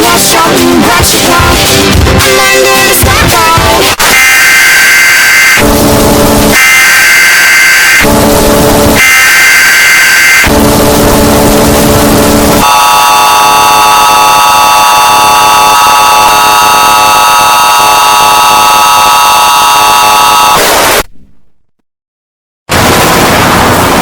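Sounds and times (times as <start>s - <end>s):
static burst: 3.9s - 21.2s
harsh low buzzing tone: 4.7s - 21.6s.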